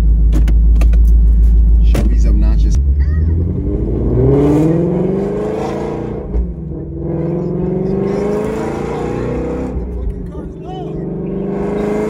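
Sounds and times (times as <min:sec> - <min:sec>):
car engine accelerating: 0:00.0 - 0:12.0
loud exhaust: 0:02.7 - 0:12.0.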